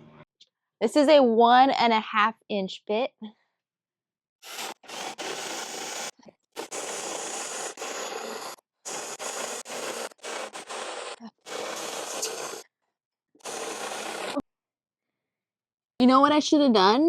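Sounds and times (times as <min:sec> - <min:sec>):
drill bit boring through wood: 0:04.4 - 0:12.6, 0:13.4 - 0:14.4.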